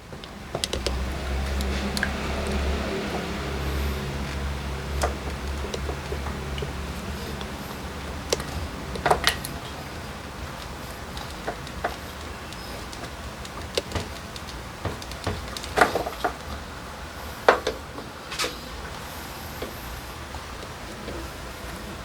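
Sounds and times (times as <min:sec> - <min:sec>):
hand tools clicking and knocking: 0:00.0 - 0:16.6.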